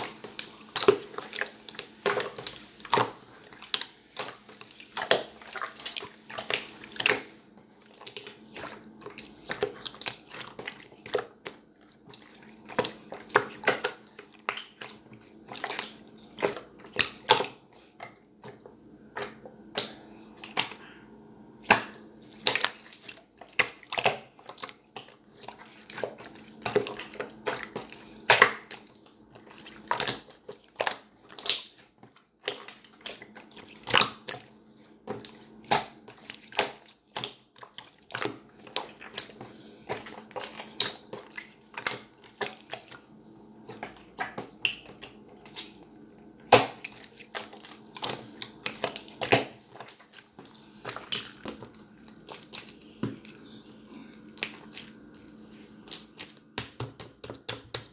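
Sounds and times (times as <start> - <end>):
faint steady hum: 0.0 - 57.9.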